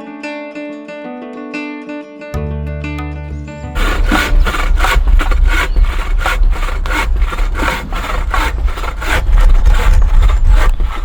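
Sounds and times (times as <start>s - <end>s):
saw cutting wood: 3.8s - 11.0s.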